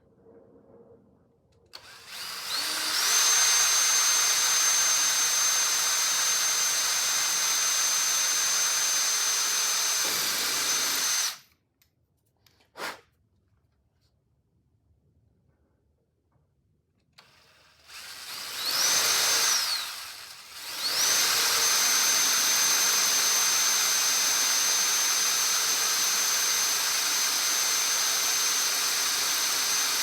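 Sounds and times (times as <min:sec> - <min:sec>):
electric drill whining into steel: 0:01.7 - 0:11.6, 0:17.1 - 0:30.0.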